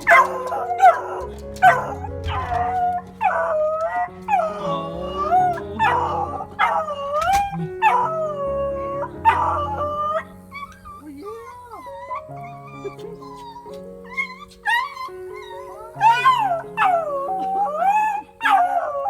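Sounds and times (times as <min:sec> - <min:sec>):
background music: 0:00.0 - 0:19.0
dog howling and whining: 0:00.0 - 0:19.0.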